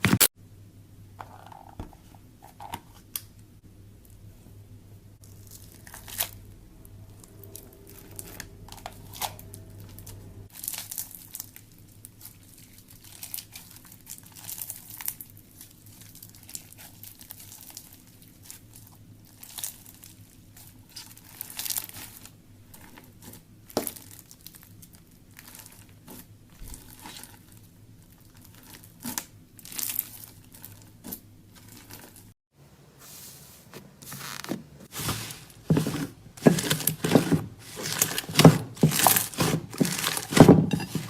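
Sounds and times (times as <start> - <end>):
slime crackling and popping: 10.5 - 18.7, 28.1 - 32.2.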